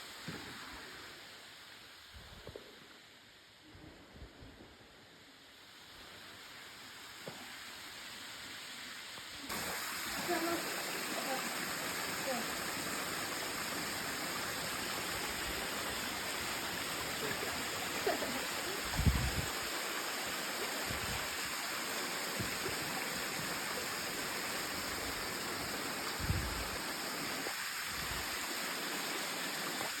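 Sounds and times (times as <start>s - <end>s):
waterfall rushing: 9.5s - 30.0s.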